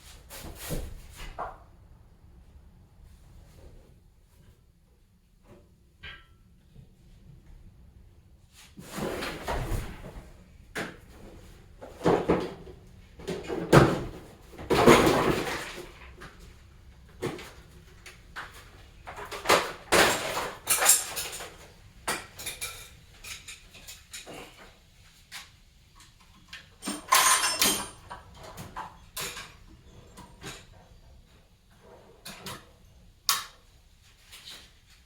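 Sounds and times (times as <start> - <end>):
objects knocking and clattering: 8.9 - 24.6, 26.1 - 30.9.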